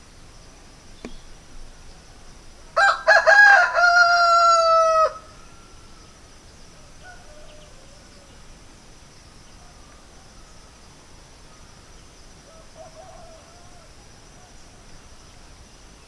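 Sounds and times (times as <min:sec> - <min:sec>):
rooster crowing: 0:02.8 - 0:05.4, 0:12.5 - 0:14.0.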